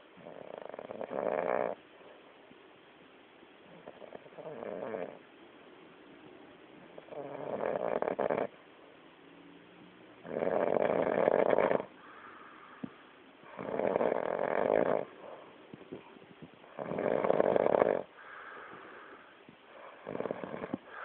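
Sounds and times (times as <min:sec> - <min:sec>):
loud snoring: 0:00.2 - 0:01.8, 0:03.7 - 0:05.2, 0:07.0 - 0:08.5, 0:10.2 - 0:11.9, 0:13.5 - 0:15.2, 0:16.7 - 0:18.4, 0:19.7 - 0:21.0
quiet breathing: 0:03.6 - 0:21.0.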